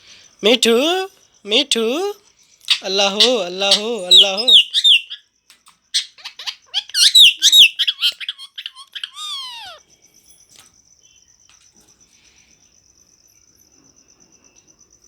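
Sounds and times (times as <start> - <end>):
faint insect trill: 0.0 - 15.0
parrot chirping and squawking: 2.7 - 5.2, 5.9 - 9.8
parrot screech: 2.7 - 5.2, 6.0 - 9.8.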